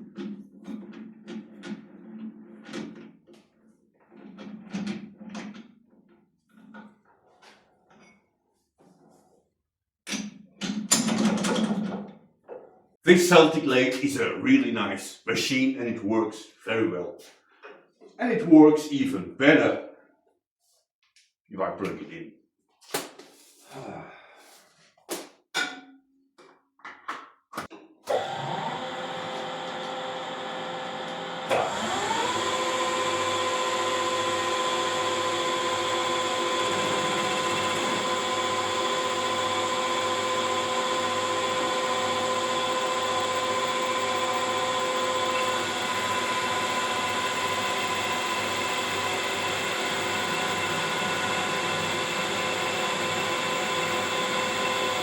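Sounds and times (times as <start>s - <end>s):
lathe motor whine: 28.1s - 55.0s.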